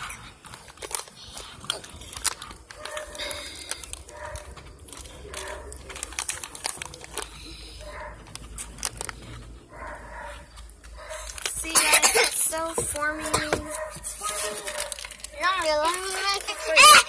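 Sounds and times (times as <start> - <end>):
slime being stirred: 0.0 - 17.0
faint voices: 11.4 - 17.0.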